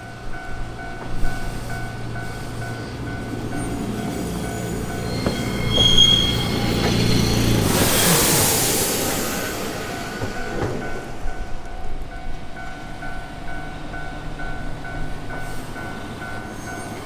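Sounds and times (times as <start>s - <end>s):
crossing warning bell: 0.0s - 7.8s, 9.2s - 17.0s
streetcar motor hum: 0.0s - 17.0s
wheel-on-rail noise: 1.0s - 11.6s
wheel squeals: 1.2s - 11.5s, 15.4s - 17.0s.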